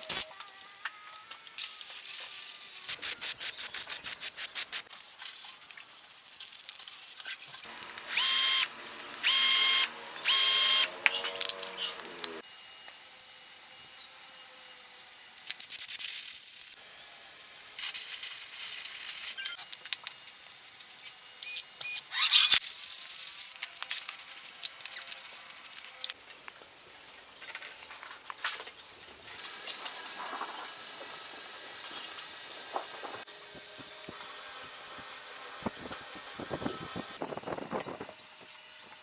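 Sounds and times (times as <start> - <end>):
hissing spray bursts: 1.6 - 4.9.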